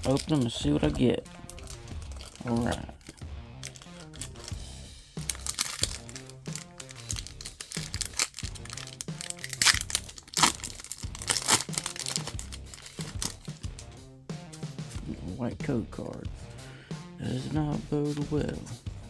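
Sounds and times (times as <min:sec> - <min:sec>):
foil wrapper crinkling: 0:00.0 - 0:15.1
background music with steady beat: 0:00.0 - 0:19.0.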